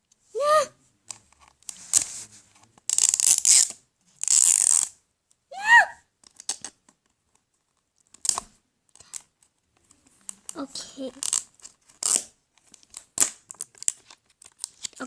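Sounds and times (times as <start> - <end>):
plastic wrapping tearing: 2.9 - 4.9, 11.2 - 15.0.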